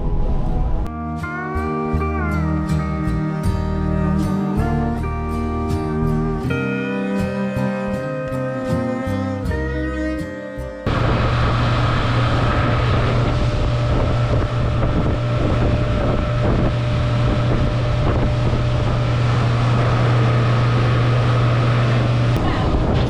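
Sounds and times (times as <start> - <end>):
slide guitar music: 0.9 - 22.5
motorboat engine running: 0.9 - 23.0
water rushing past hull: 10.9 - 23.0
wind buffeting microphone: 10.9 - 23.0.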